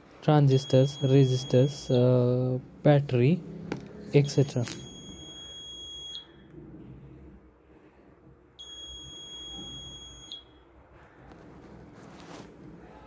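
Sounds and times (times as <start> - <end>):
smoke alarm buzzer beeping: 0.5 - 2.1, 4.2 - 6.4, 8.6 - 10.6.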